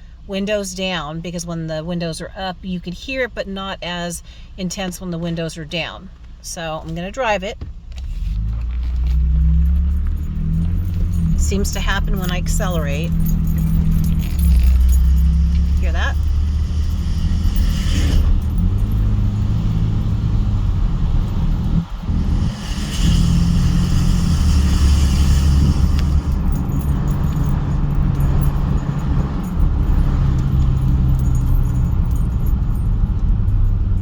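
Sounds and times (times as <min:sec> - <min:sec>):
road and wind noise: 0:03.1 - 0:34.0
low grinding rumble: 0:07.9 - 0:34.0.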